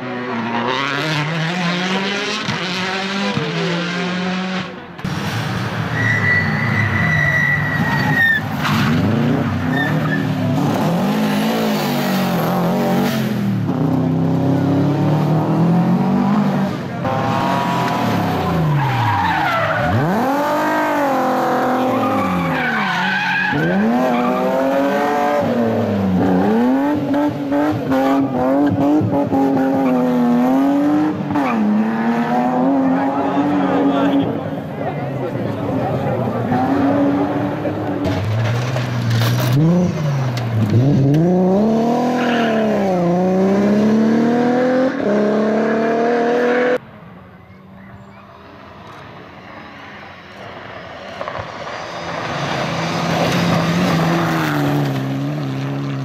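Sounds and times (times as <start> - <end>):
rally car engines revving: 0.0 - 47.1, 47.8 - 56.0
high squeal: 5.9 - 8.5.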